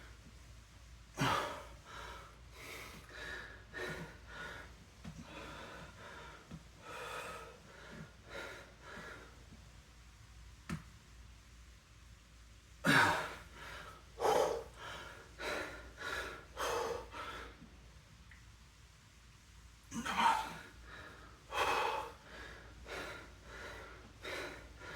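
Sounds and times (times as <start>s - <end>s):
man breathing heavily: 1.2s - 9.6s, 12.9s - 17.7s, 20.0s - 24.9s.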